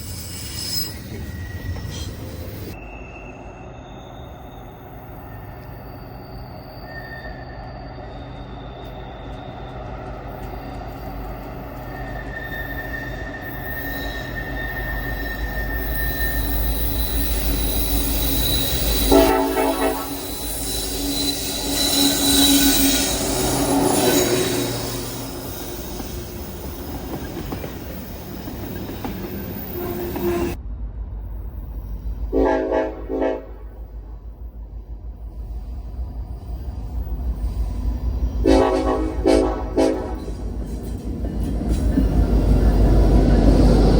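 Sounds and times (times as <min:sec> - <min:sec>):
wheels squealing on rails: 0:00.0 - 0:30.6, 0:31.3 - 0:43.9
train rumbling by: 0:00.0 - 0:43.9
train horn blasts: 0:19.1 - 0:20.4, 0:29.8 - 0:30.6, 0:32.3 - 0:33.9, 0:38.4 - 0:40.4.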